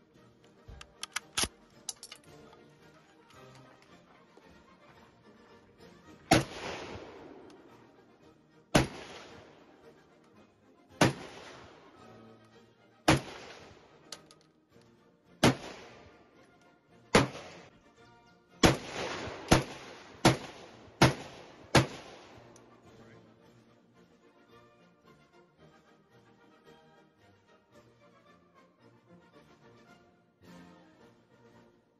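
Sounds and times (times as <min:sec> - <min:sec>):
rifle shots echoing: 0:06.3 - 0:07.8, 0:08.8 - 0:09.6, 0:11.0 - 0:12.0, 0:13.1 - 0:14.0, 0:15.4 - 0:16.2, 0:17.2 - 0:17.7, 0:18.6 - 0:22.5.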